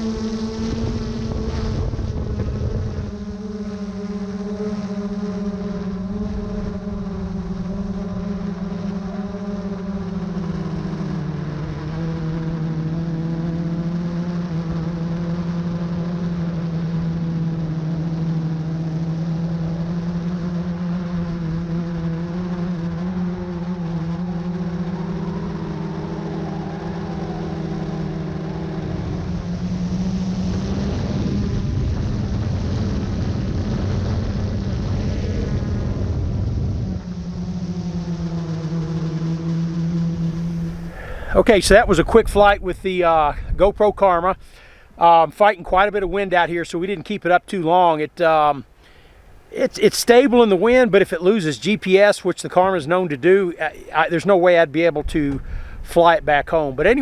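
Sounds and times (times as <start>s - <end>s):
wind rumbling on microphone: 0.0s - 44.6s
drone propellers humming: 0.0s - 57.0s.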